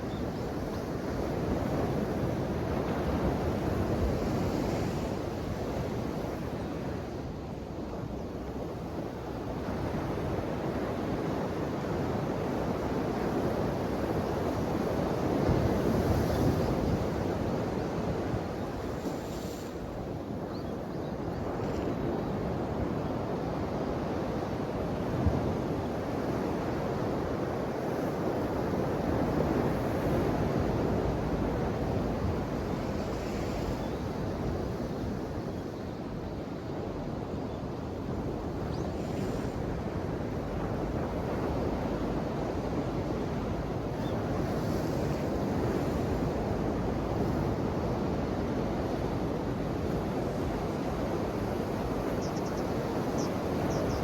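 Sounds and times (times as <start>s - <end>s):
ocean waves surf hiss: 9.1s - 20.4s, 27.2s - 36.8s.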